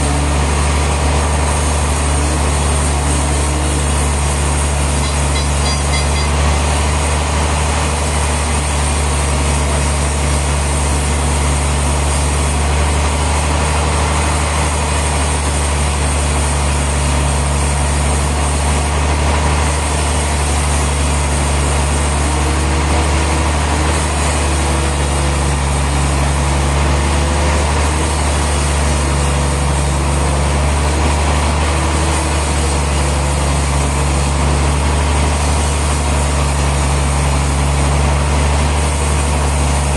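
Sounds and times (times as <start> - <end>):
sawmill machinery engine hum: 0.0 - 39.9
faint high tone: 5.0 - 6.4.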